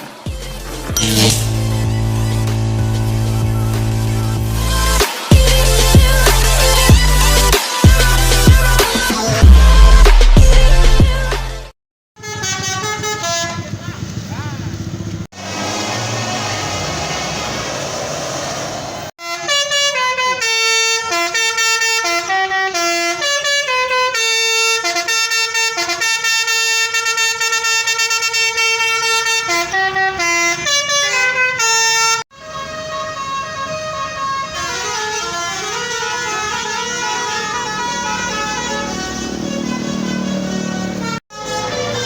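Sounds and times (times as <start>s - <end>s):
multi-tone bus horns playing tune: 0.2s - 10.0s, 12.2s - 14.0s, 19.2s - 42.0s.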